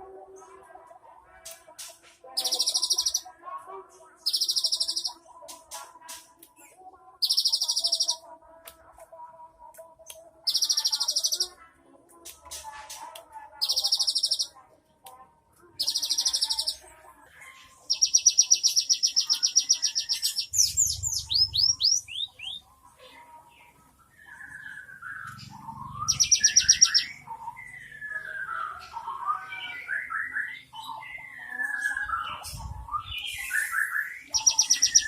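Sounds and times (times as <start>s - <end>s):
bird singing rapid trills: 2.4s - 3.3s, 4.2s - 5.2s, 7.2s - 8.2s, 10.5s - 11.5s, 13.6s - 14.5s, 15.8s - 16.8s, 17.9s - 22.6s, 24.7s - 28.8s, 33.0s - 35.0s.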